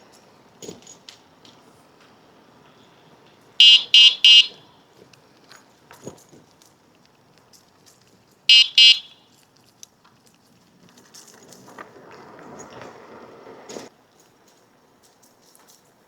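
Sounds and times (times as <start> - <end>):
high-pitched electronic beeps: 3.6 - 4.6, 8.5 - 9.1.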